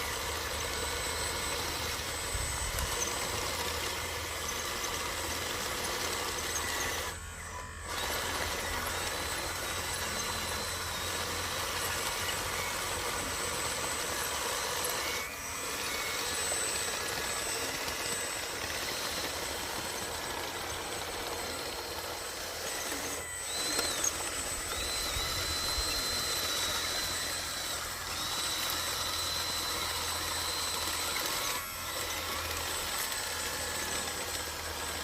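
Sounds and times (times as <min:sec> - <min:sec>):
model trucks humming and whirring: 0:00.0 - 0:35.0.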